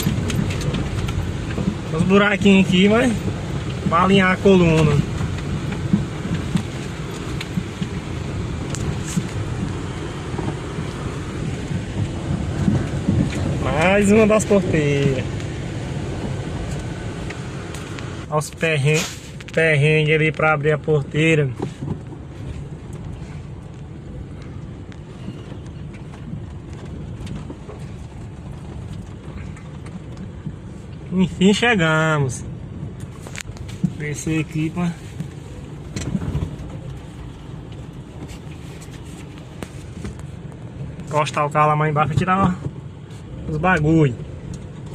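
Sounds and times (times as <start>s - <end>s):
knocks and rattles: 0.0s - 2.0s
car rumbling on dirt road: 0.0s - 44.9s.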